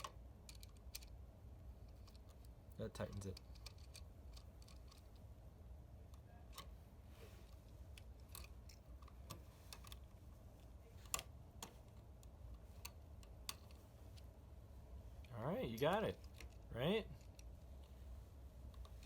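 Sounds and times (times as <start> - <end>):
screwdriver clicking and scraping: 1.8 - 5.3, 7.4 - 10.2.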